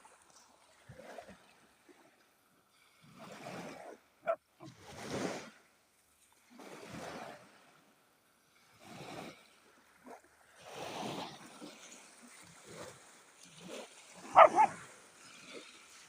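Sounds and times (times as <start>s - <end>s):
sea waves washing onto shore: 8.6s - 16.0s.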